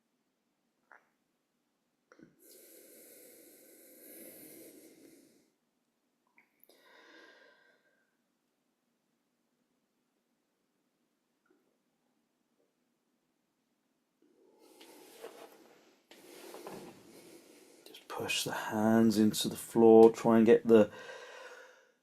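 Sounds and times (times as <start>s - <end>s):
person breathing through nose: 2.4s - 5.5s, 6.7s - 8.0s, 16.2s - 17.9s, 20.9s - 22.0s.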